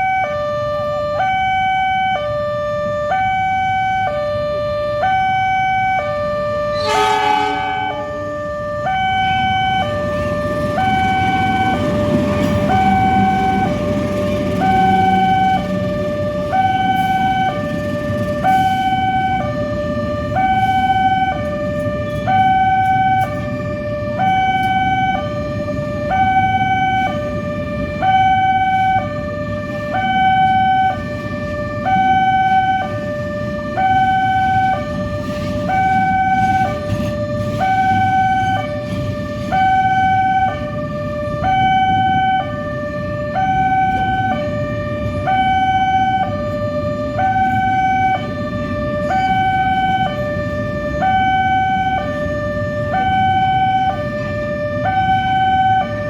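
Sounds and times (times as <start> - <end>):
road traffic noise: 0.0 - 56.0
two-tone crossing siren: 0.0 - 56.0.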